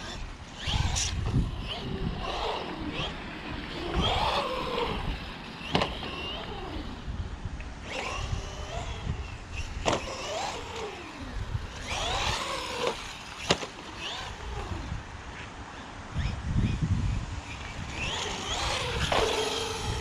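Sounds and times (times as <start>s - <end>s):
rc car motor whining: 0.0s - 7.2s, 7.8s - 20.0s
rumble of wind and tyres: 0.0s - 20.0s.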